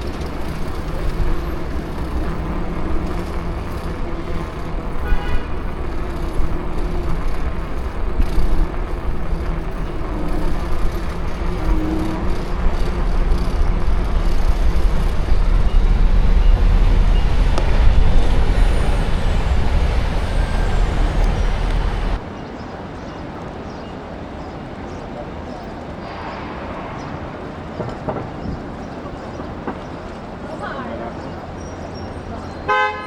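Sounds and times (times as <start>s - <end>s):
faint high whine: 0.0s - 22.3s
road traffic rumble: 0.0s - 33.0s.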